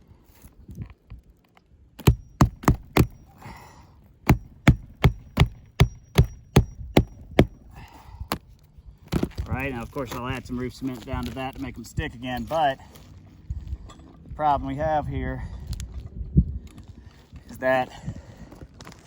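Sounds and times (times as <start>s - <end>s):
hammer blows on shingle roof: 2.0s - 3.4s, 4.2s - 8.4s.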